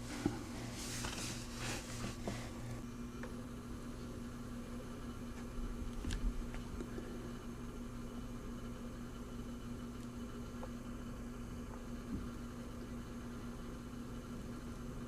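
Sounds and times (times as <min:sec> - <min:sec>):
faint rustling: 0:00.0 - 0:02.8.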